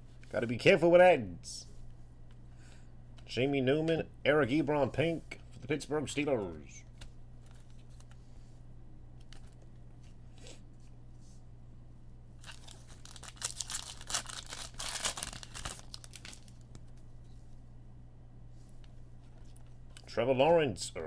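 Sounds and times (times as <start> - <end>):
low steady hum: 0.0 - 21.0
foil wrapper tearing and crinkling: 12.4 - 16.8.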